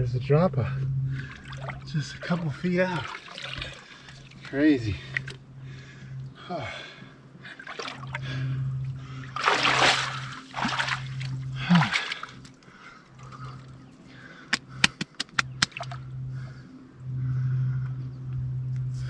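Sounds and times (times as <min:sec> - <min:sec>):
water splashing from swimming: 0:01.1 - 0:16.1
sharp clicks: 0:14.5 - 0:16.1.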